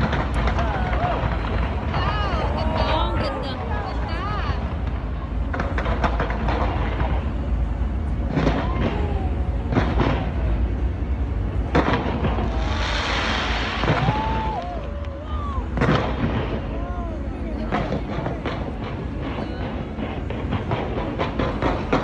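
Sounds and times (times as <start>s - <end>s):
fireworks crackling fizz: 0.0s - 7.4s, 11.6s - 15.0s
fireworks bangs: 0.0s - 16.8s, 17.6s - 22.0s
deep rumble: 0.0s - 22.0s.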